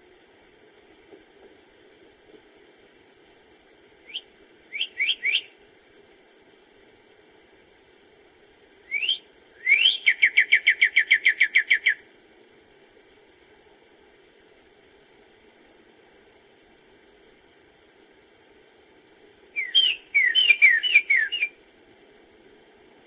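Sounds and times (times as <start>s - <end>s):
faint steady hiss: 0.0s - 23.0s
songbird singing: 4.0s - 5.6s, 8.8s - 12.1s, 19.5s - 21.6s.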